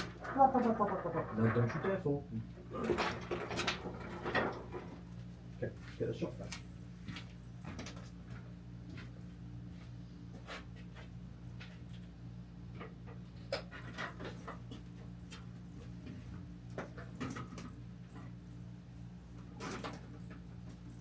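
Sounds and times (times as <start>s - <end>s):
knocks clicks and rustles: 0.0s - 5.3s.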